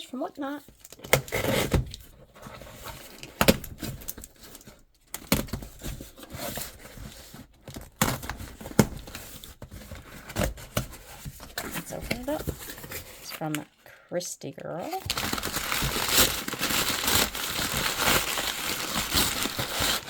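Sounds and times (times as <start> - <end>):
package rustling and crinkling: 2.0 - 13.8, 14.8 - 20.0.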